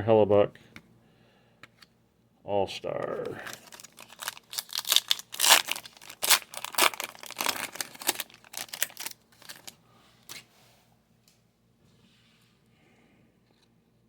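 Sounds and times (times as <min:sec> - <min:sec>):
trading card wrapper crinkling: 0:03.1 - 0:09.8.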